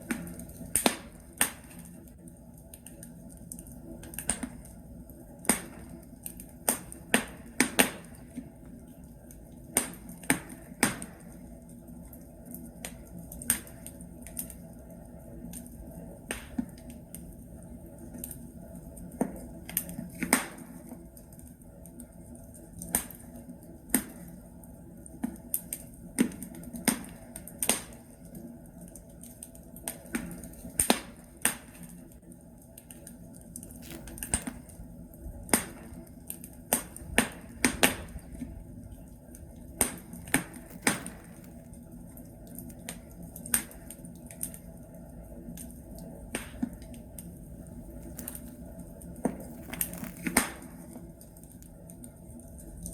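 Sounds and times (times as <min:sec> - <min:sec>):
wood fire crackling and popping: 0:00.0 - 0:14.9, 0:28.8 - 0:38.6, 0:39.2 - 0:44.7, 0:45.4 - 0:52.9.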